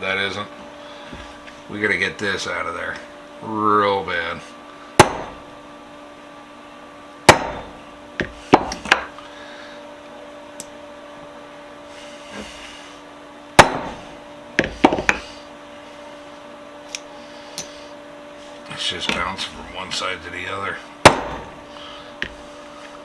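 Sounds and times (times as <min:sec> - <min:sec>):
hammer striking metal vise: 0:05.0 - 0:05.4, 0:07.3 - 0:09.0, 0:13.6 - 0:14.0, 0:21.0 - 0:21.5.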